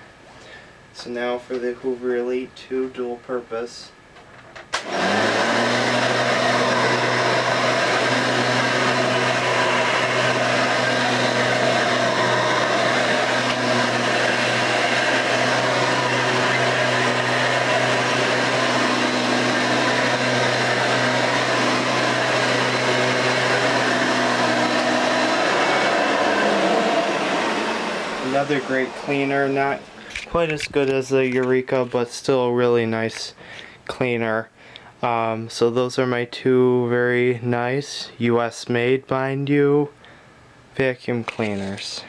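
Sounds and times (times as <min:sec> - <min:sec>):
upright vacuum cleaner running: 0:04.8 - 0:31.8.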